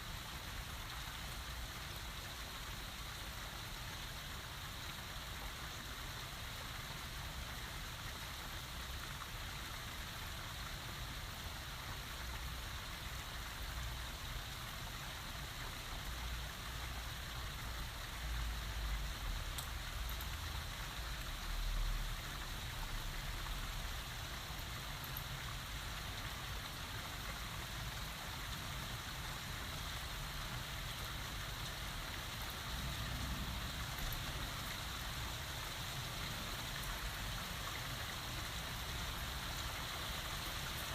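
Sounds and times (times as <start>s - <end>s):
heavy rain falling: 11.0s - 40.9s.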